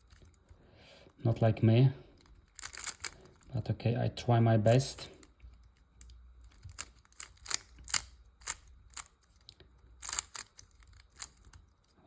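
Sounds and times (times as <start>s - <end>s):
puzzle cube clicking: 2.5s - 3.4s, 6.0s - 9.4s, 10.0s - 11.6s.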